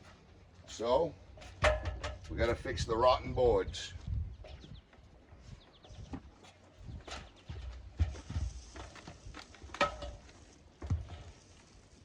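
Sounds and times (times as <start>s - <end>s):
knocks and thumps: 1.4s - 2.3s, 7.0s - 10.2s.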